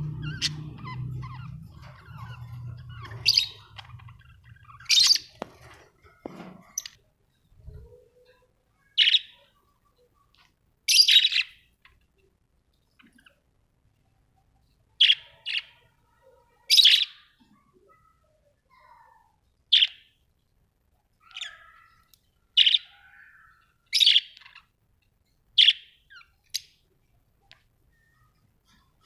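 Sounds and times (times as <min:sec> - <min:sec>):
budgerigars chirping: 0:00.0 - 0:07.0, 0:10.9 - 0:11.6, 0:21.3 - 0:22.0, 0:22.6 - 0:24.7, 0:25.6 - 0:26.7
soft bird chatter: 0:00.0 - 0:29.0.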